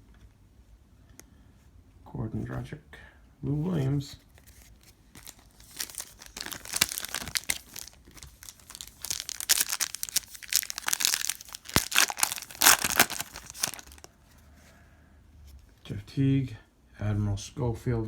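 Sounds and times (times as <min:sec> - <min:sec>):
foil wrapper tearing and crinkling: 0:04.7 - 0:14.1.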